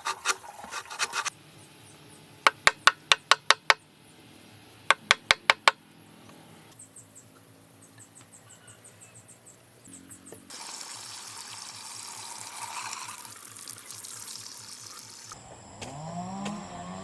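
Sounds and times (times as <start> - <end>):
water running and splashing: 10.5 - 15.4.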